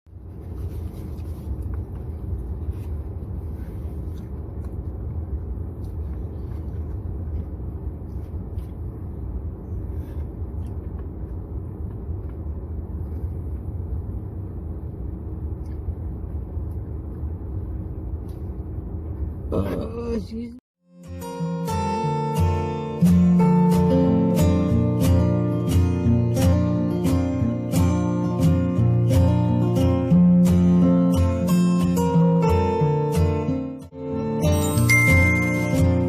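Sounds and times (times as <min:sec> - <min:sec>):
low rumble inside car: 0:00.1 - 0:20.6.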